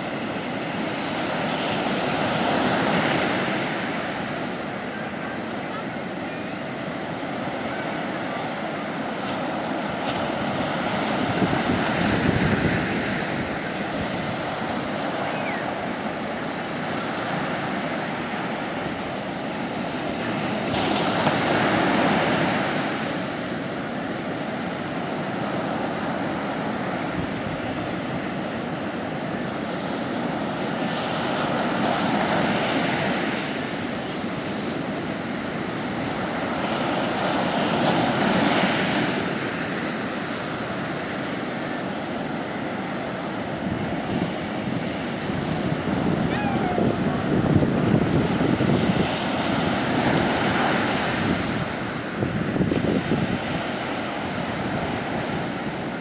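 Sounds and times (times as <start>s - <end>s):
sea waves breaking on beach: 0.0s - 56.0s
wind rumble on microphone: 9.4s - 23.6s, 43.2s - 56.0s.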